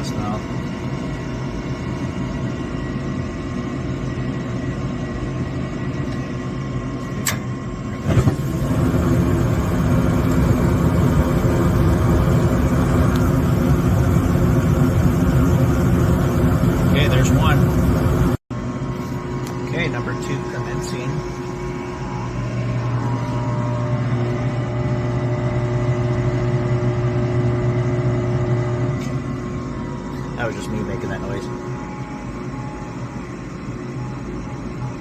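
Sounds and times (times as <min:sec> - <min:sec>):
deep furnace burner rumble: 0:00.0 - 0:35.0
gas furnace humming: 0:00.0 - 0:35.0
furnace ignition click: 0:07.0 - 0:10.6, 0:12.8 - 0:13.4.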